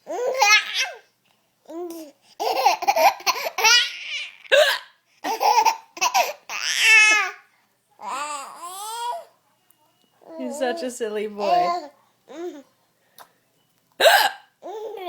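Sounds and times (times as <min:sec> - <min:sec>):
baby giggling: 0:02.4 - 0:04.6, 0:05.2 - 0:07.4
woman hiccuping: 0:14.0 - 0:14.5.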